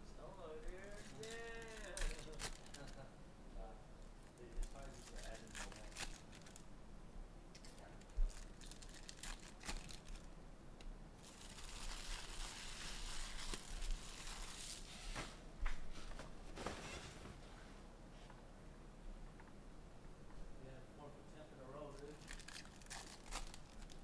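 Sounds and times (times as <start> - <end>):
plastic wrapping tearing and crinkling: 0.6 - 3.0, 4.6 - 6.6, 7.6 - 10.3, 11.2 - 15.2, 22.0 - 24.0.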